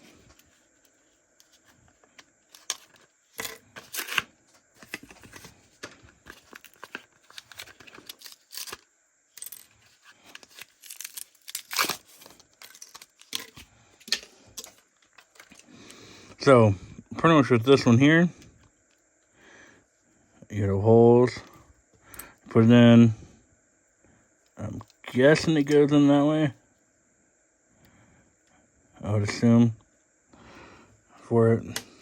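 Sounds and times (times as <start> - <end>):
plastic crinkling and clicks: 4.8 - 8.8, 10.3 - 15.6
plastic packaging tearing: 6.3 - 8.8, 10.3 - 13.6.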